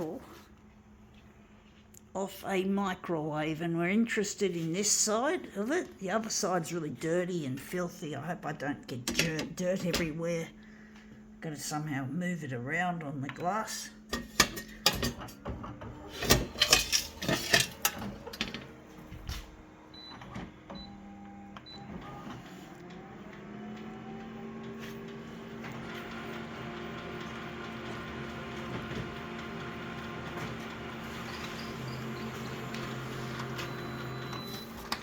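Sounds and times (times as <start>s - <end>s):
photocopier motor whirring: 15.2s - 35.0s
metal plate clattering on glass: 16.2s - 18.6s.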